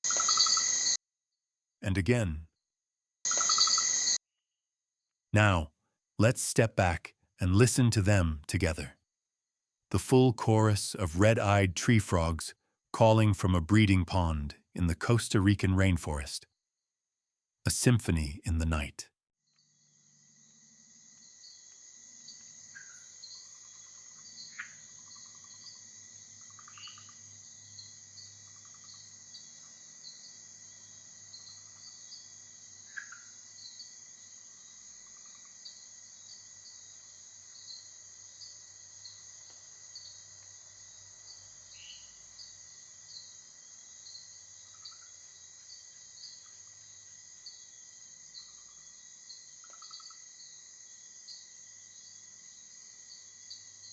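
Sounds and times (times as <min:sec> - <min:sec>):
high insect trill: 0:00.0 - 0:01.0, 0:03.3 - 0:04.2, 0:19.5 - 0:53.9
tree frogs calling: 0:00.0 - 0:01.0, 0:03.3 - 0:04.2, 0:21.2 - 0:52.2.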